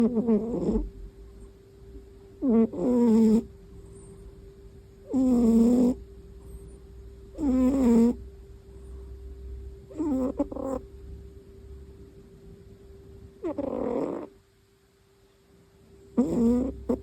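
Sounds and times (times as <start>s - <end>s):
cat snoring: 0.0s - 1.4s, 2.4s - 4.1s, 5.0s - 9.0s, 9.9s - 10.9s, 13.4s - 14.4s, 16.1s - 17.0s
quiet breathing: 0.0s - 11.0s.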